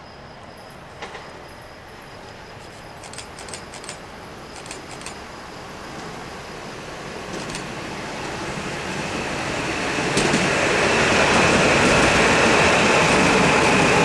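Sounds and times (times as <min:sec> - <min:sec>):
train rumbling on rails: 0:00.0 - 0:14.0
sharp clicks: 0:02.7 - 0:05.2, 0:07.4 - 0:07.8.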